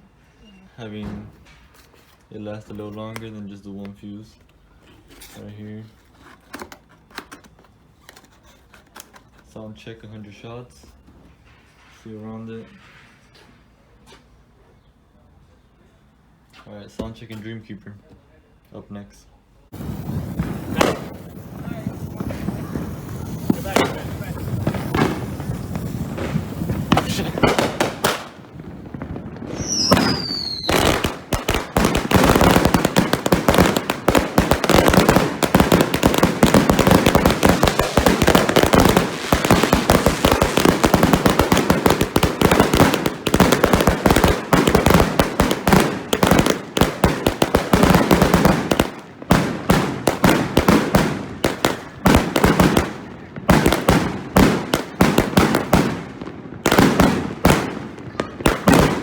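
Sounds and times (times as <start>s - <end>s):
rapid firework salute bangs: 19.7s - 59.0s
falling firework whistle: 19.8s - 33.8s.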